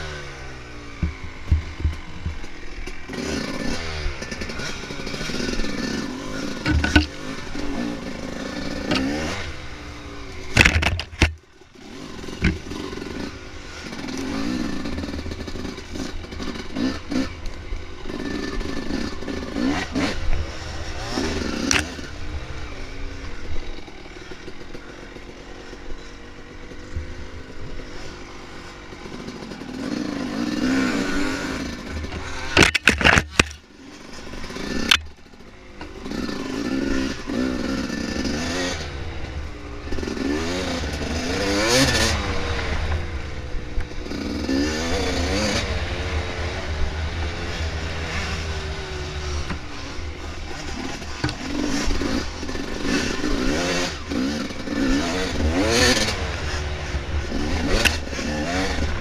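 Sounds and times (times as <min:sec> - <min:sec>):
dirt bike engine revving: 0:00.0 - 0:59.0
sharp clattering knocks: 0:01.0 - 0:03.0, 0:06.6 - 0:07.2, 0:10.6 - 0:11.4, 0:12.4 - 0:12.7, 0:32.0 - 0:33.6.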